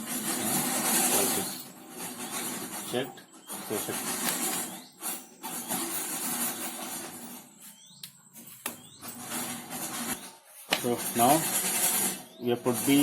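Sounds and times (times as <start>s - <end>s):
metal parts clicking and knocking: 0.0s - 8.0s, 8.7s - 13.0s.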